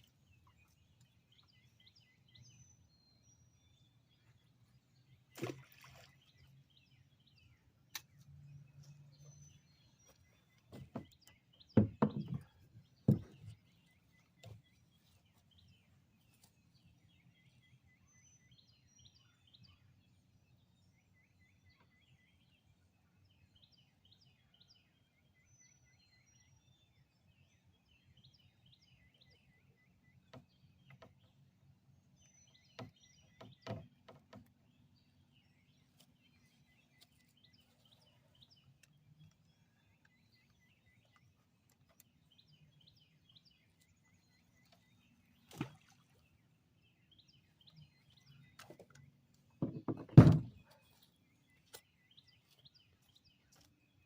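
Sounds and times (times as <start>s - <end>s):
wild birds chirping: 0.0s - 54.0s
knocks and thumps: 10.7s - 11.2s, 11.8s - 13.5s, 49.6s - 50.6s.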